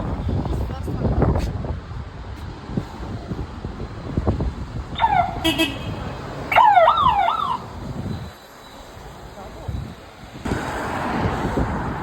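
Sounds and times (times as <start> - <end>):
street noise: 0.0 - 12.0
electronic siren yelping: 5.0 - 5.4, 6.5 - 7.7.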